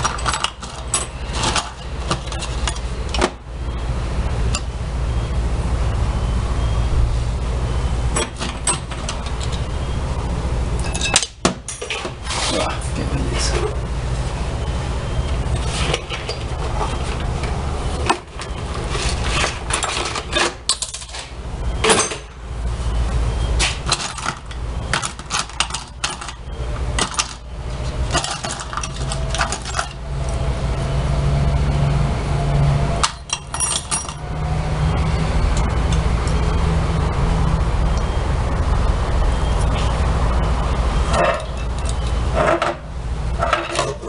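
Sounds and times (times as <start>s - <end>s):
metal parts and tools clinking: 0.0s - 3.3s, 8.2s - 9.7s, 10.8s - 12.6s, 18.0s - 22.3s, 23.8s - 30.4s, 33.0s - 34.4s, 41.1s - 42.8s, 43.4s - 44.0s
steady low hum: 0.0s - 44.0s.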